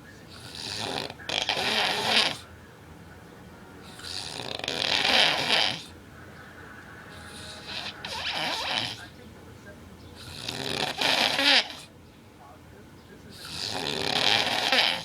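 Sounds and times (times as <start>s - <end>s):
quiet breathing: 0.0s - 10.6s
man snoring heavily: 0.3s - 2.5s, 3.8s - 6.0s, 7.1s - 9.1s, 10.2s - 11.8s, 13.4s - 15.0s.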